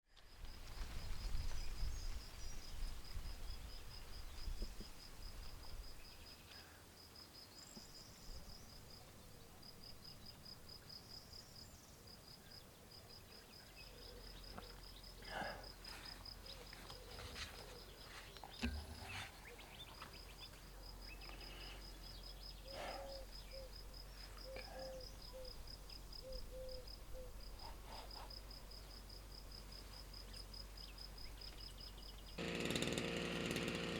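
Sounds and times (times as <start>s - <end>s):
insects chirping: 0.3s - 32.4s
birds calling: 12.7s - 28.4s.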